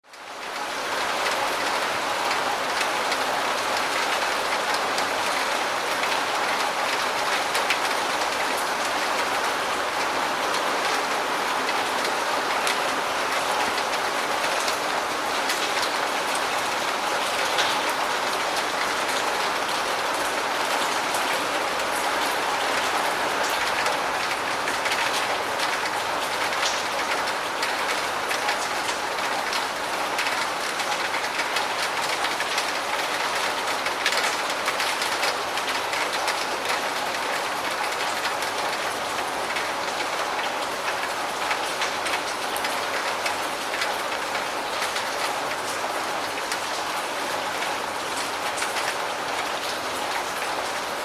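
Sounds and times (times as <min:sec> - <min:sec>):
rain falling: 0:00.0 - 0:51.0
raindrop ticks: 0:20.2 - 0:45.6.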